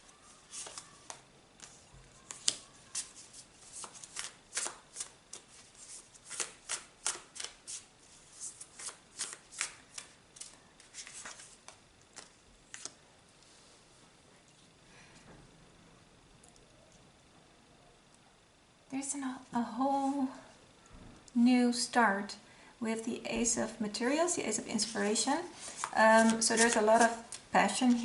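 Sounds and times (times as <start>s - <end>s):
cards being shuffled: 0.4s - 13.0s, 24.8s - 28.0s.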